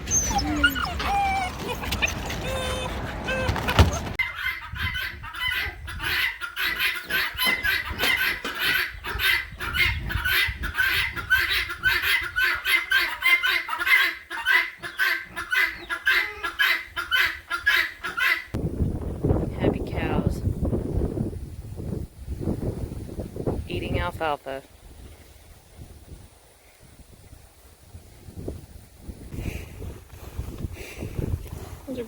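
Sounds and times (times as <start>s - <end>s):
chickens clucking: 0.0s - 18.6s.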